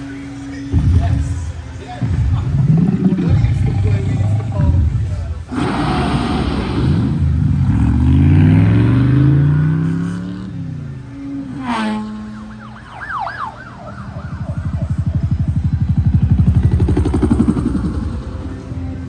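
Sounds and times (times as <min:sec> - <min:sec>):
rapid pulsing engine note: 0:00.7 - 0:19.0
engine revving up: 0:02.0 - 0:12.6, 0:14.0 - 0:18.9
wavering siren-like tone: 0:10.9 - 0:18.7.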